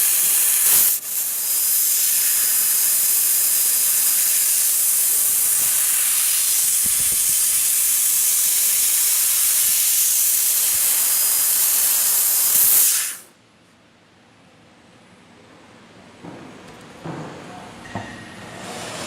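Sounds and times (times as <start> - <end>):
laser cutter hissing: 0.0 - 13.3.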